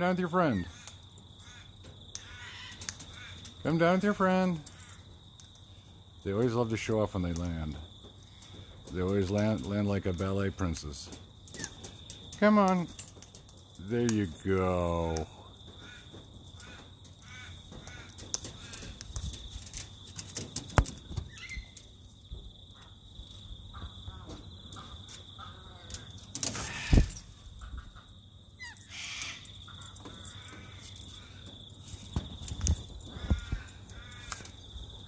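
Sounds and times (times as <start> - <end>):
cockatoos screeching and chattering: 26.4 - 28.0, 28.6 - 31.4.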